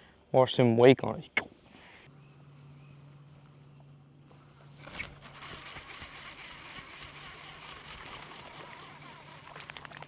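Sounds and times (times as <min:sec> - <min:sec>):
fishing reel whirring: 0:04.8 - 0:10.0
sharp reel clicks: 0:04.8 - 0:10.0.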